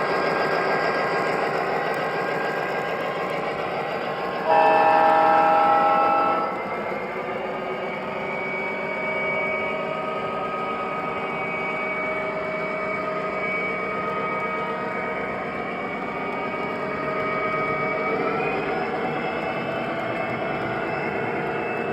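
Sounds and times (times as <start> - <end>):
diesel engine running with whine: 0.0 - 21.9
model locomotive horn blast: 4.4 - 6.7.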